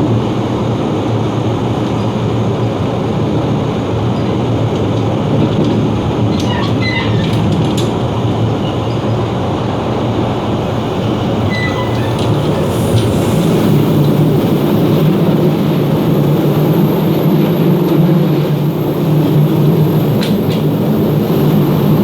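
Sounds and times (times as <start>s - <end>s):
train rumble: 0.0s - 22.0s
high squeaks and clicks: 11.4s - 13.1s.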